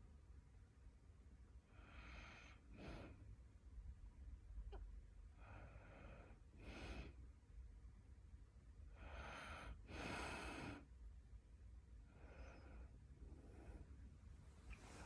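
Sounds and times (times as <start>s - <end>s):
faint snoring breaths: 9.0s - 10.9s.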